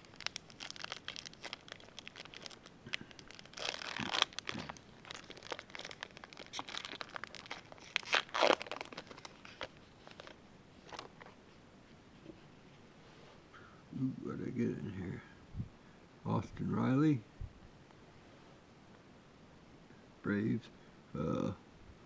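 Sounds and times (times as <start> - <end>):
foil wrapper tearing and crinkling: 0.0 - 11.1.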